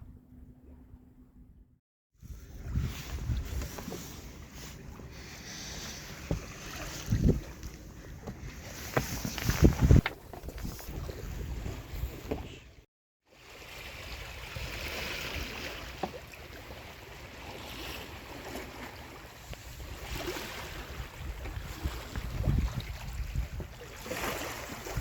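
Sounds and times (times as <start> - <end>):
wind on microphone: 2.2 - 4.0, 6.2 - 7.7, 8.3 - 12.8, 19.4 - 25.0
water rushing along hull: 2.2 - 25.0.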